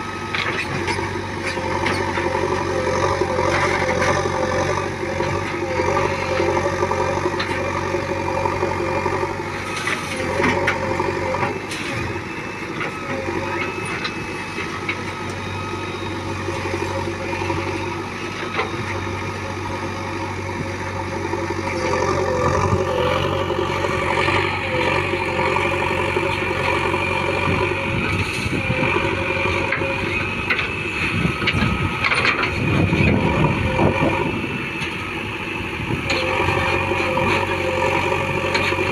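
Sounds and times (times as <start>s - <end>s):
diesel engine running: 0.0s - 38.9s
high whine: 9.8s - 38.9s.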